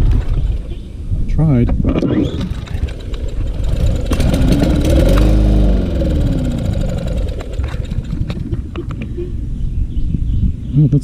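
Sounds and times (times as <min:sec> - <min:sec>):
mower engine pull-starting: 0:02.0 - 0:09.0.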